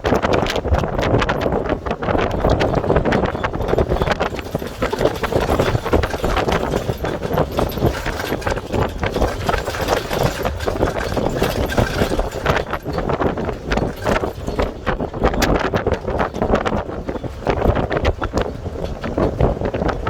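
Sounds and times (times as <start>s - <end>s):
knocking and rattling: 0.2s - 20.0s
vehicle running: 2.3s - 14.8s.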